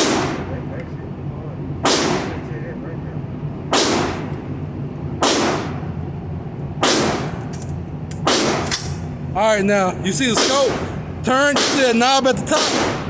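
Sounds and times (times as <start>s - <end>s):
gunshots with echo: 0.0s - 0.5s, 1.8s - 2.4s, 3.7s - 4.3s, 5.2s - 5.9s, 6.8s - 7.4s, 8.2s - 8.9s, 10.3s - 13.0s.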